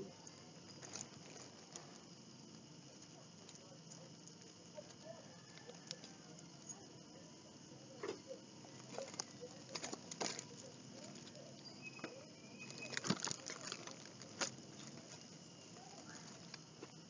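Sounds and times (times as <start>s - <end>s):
package crinkling and rustling: 0.7s - 2.0s, 8.8s - 11.3s, 12.6s - 16.6s.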